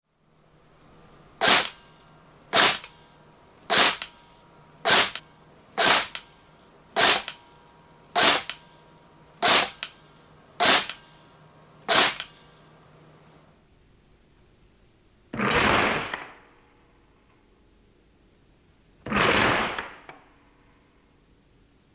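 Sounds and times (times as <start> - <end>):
airsoft rifle dry-fire clacks: 1.4 - 3.0, 3.7 - 6.4, 7.0 - 7.4, 8.2 - 8.8, 9.4 - 11.2, 11.9 - 12.5.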